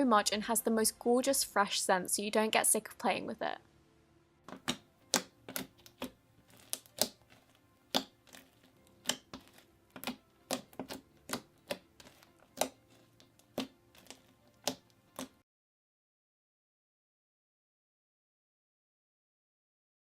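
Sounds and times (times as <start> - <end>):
slime clicking and popping: 4.5 - 15.4.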